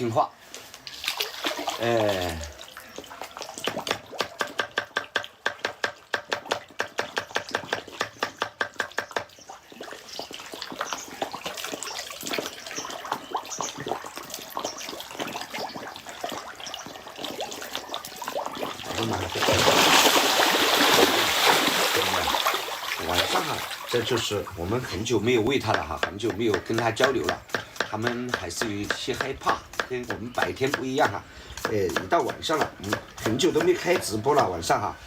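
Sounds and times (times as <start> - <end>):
fish splashing at water surface: 0.8 - 5.4, 9.4 - 24.6
rush of water: 17.2 - 25.1.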